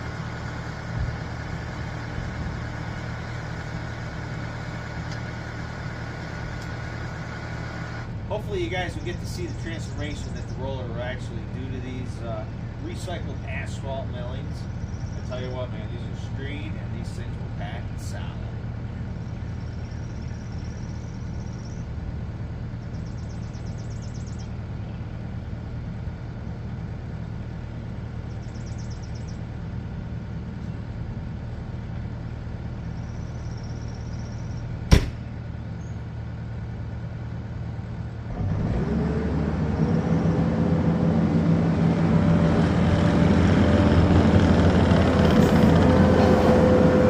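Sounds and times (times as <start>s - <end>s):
diesel engine running: 0.0s - 47.0s.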